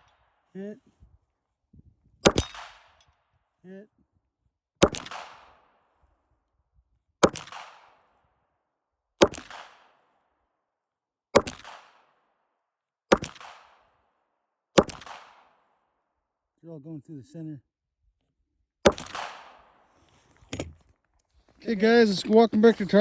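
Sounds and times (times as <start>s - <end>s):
pistol shots with echo: 2.2s - 3.0s, 4.8s - 5.7s, 7.2s - 8.1s, 9.2s - 10.1s, 11.4s - 12.1s, 13.1s - 14.0s, 14.8s - 15.7s, 18.8s - 19.8s.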